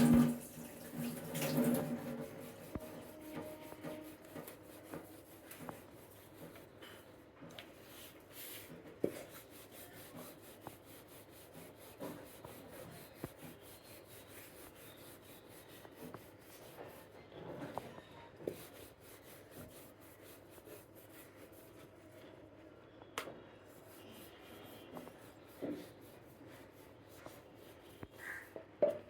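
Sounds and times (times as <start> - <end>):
rolling pin rubbing dough: 2.0 - 6.8, 7.8 - 22.1.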